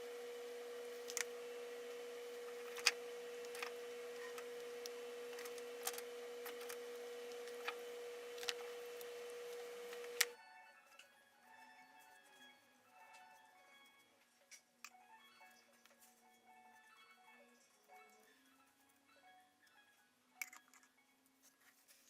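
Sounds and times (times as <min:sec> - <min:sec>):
steady mid-pitched hum: 0:00.0 - 0:10.4.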